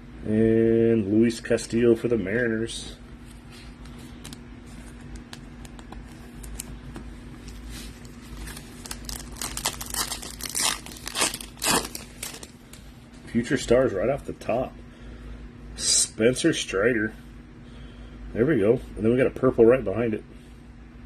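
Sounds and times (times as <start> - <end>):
foil wrapper crinkling and tearing: 7.5 - 12.8.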